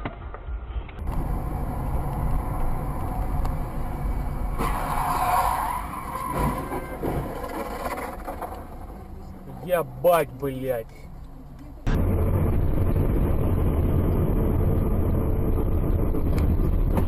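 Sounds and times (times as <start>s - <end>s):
car engine and road rumble: 0.0s - 17.0s
tyre skid: 4.2s - 10.2s.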